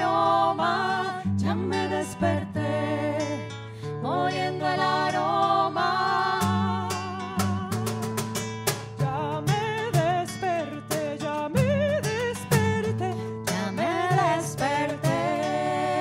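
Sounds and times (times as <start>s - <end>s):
person singing wordless melody: 0.0s - 8.1s, 9.0s - 16.0s
strummed guitar: 0.0s - 16.0s
bass line: 11.4s - 16.0s.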